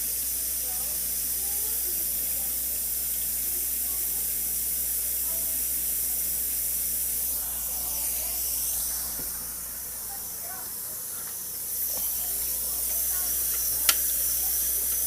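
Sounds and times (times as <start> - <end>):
tap water running into a glass: 11.2 - 15.0.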